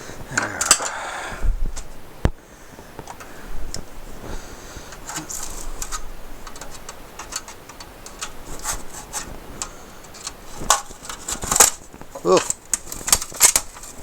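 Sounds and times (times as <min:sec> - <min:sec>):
hand tools clicking on metal: 0:00.3 - 0:01.1, 0:04.9 - 0:14.0.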